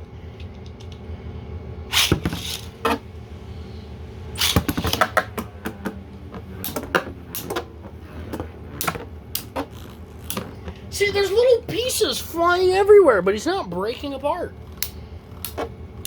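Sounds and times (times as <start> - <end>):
spinning tops whirring: 0.0 - 16.0
spinning tops clacking: 1.9 - 3.0, 4.3 - 12.9.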